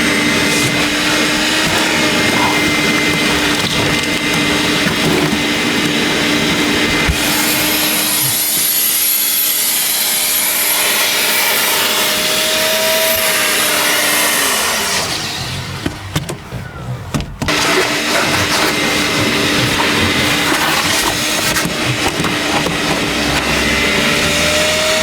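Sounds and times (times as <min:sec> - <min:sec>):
vacuum cleaner humming: 0:00.0 - 0:16.2, 0:17.5 - 0:25.0.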